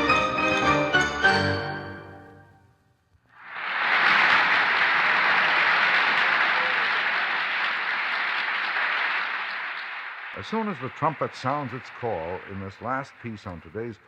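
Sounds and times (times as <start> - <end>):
orchestral music with xylophone: 0.0 - 2.4
audience applauding: 3.4 - 14.0.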